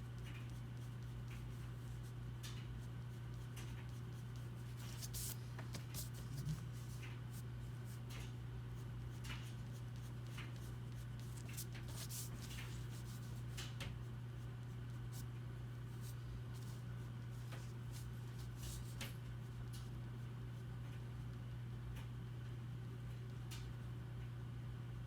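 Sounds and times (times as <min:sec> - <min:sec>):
pencil scratching on paper: 0:03.9 - 0:07.0, 0:09.6 - 0:13.3.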